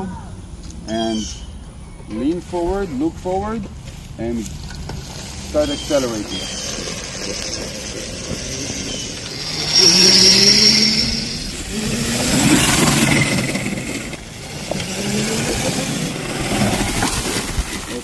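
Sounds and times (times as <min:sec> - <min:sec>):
wheels rolling: 0:02.4 - 0:18.0
electric motor whining: 0:05.4 - 0:17.5.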